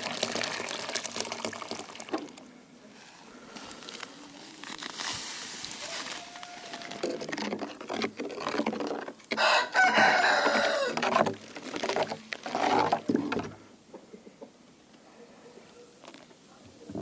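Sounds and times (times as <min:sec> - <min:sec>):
rooster crowing: 0:05.8 - 0:07.1, 0:09.4 - 0:11.0.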